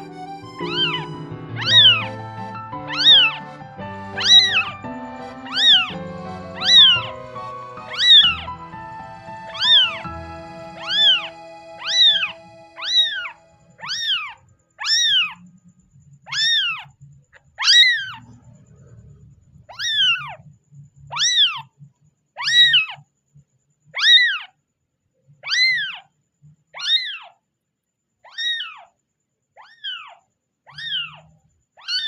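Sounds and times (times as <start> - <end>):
kitten meowing: 0.0 - 7.2, 7.8 - 10.2, 10.8 - 15.4, 16.3 - 17.0, 17.6 - 18.3, 19.7 - 20.4, 21.1 - 21.7, 22.4 - 23.0, 24.0 - 24.5, 25.4 - 26.1, 26.8 - 27.4, 28.3 - 28.9, 29.6 - 32.0.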